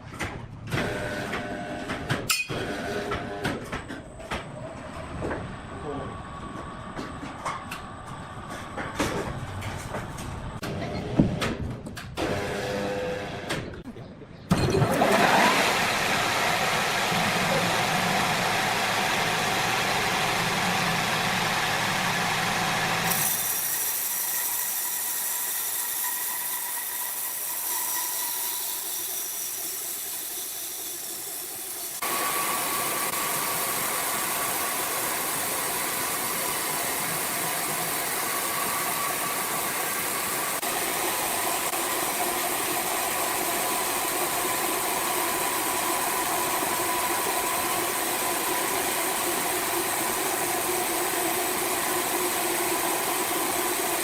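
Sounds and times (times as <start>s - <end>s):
sawmill machinery running: 12.2s - 13.7s, 14.7s - 54.0s.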